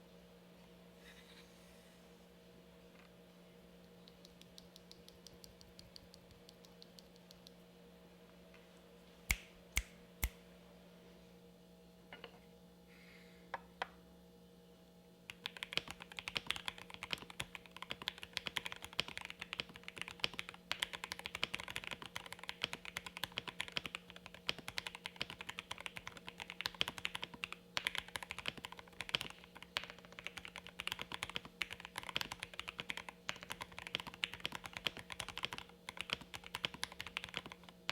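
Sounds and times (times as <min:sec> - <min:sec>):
mechanical keyboard typing: 0:15.3 - 0:37.9.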